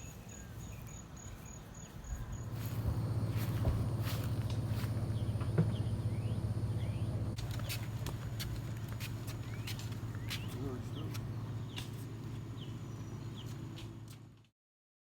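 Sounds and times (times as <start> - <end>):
crickets chirping: 0.0 - 13.9
low rumble: 2.3 - 7.4.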